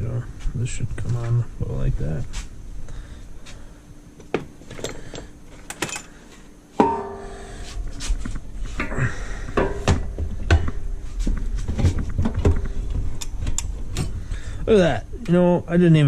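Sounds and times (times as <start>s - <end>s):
metal parts clanking: 4.6s - 6.2s
ringing metal clang: 6.8s - 7.8s.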